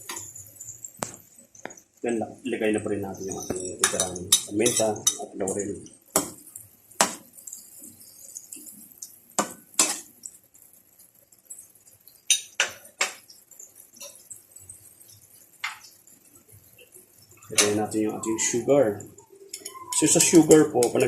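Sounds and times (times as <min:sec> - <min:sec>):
utensil clinking against pot: 0:03.6 - 0:05.3.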